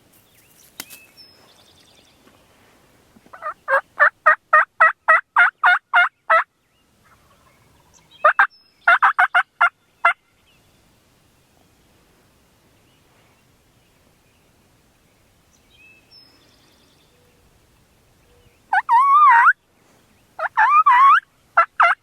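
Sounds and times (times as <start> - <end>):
turkey yelping: 3.3 - 6.4, 18.7 - 19.6, 20.4 - 22.0.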